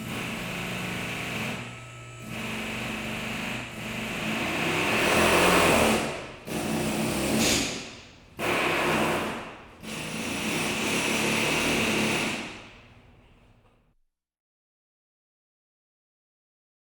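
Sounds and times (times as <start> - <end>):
power tool running: 0.0 - 13.4.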